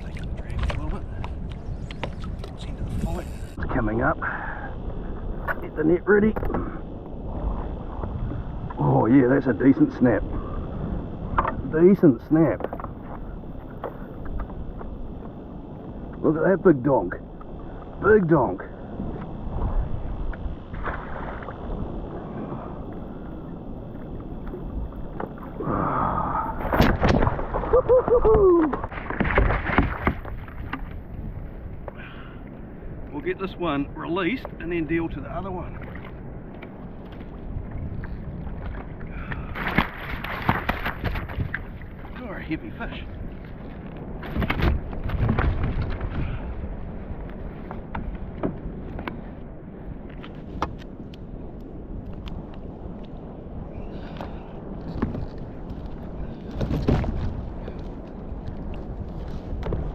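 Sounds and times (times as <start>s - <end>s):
thumps on a kayak: 28.7s - 31.0s, 39.5s - 41.6s, 44.2s - 46.2s, 56.5s - 57.4s.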